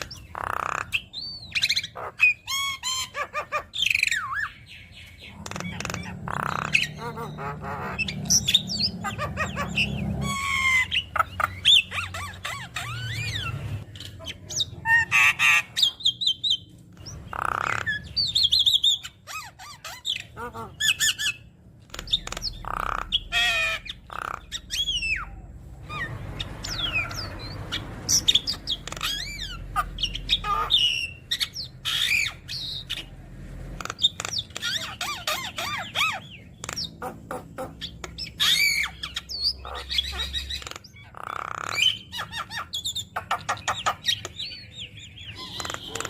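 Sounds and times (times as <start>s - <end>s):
myna bird singing: 0.0s - 46.0s.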